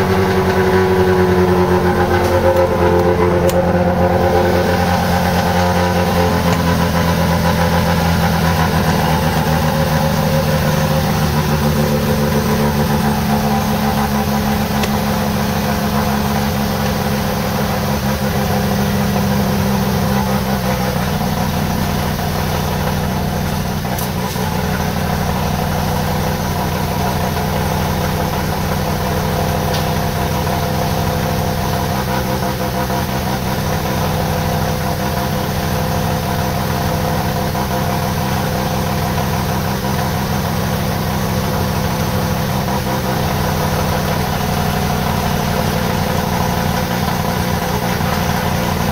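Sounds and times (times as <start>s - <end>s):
rotary engine idling: 0.0s - 48.9s.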